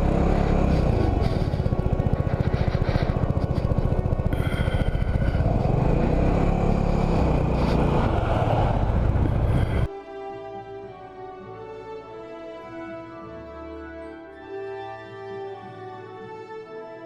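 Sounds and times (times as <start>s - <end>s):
road noise: 0.0s - 9.9s
scooter engine running: 0.0s - 9.9s
orchestral music: 0.0s - 17.0s.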